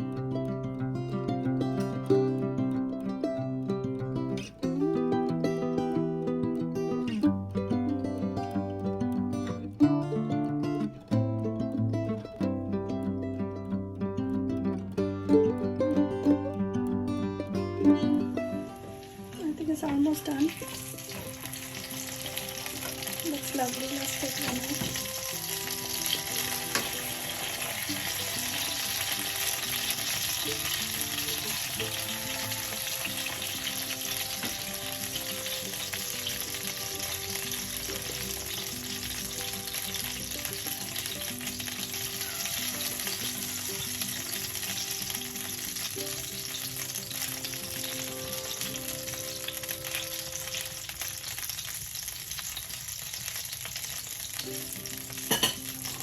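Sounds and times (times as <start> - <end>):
soft background melody: 0.0 - 51.8, 52.4 - 56.0
food sizzling in hot oil: 18.6 - 56.0.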